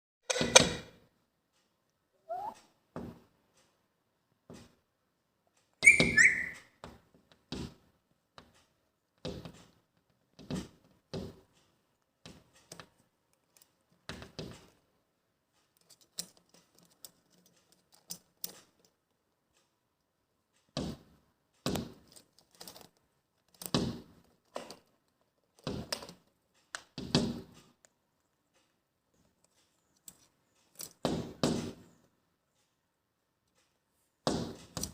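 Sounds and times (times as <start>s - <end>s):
parrots tapping and knocking: 0.3s - 1.0s, 5.8s - 8.6s, 9.2s - 11.6s, 20.7s - 22.9s, 23.6s - 24.9s, 25.5s - 26.2s, 26.8s - 27.6s, 30.8s - 31.9s
parrot high call: 2.2s - 2.7s, 5.8s - 6.8s.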